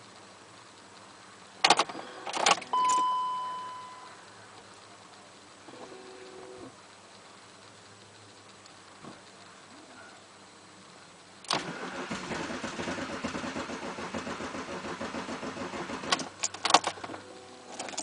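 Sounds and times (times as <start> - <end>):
engine cranking without starting: 11.5 - 17.1.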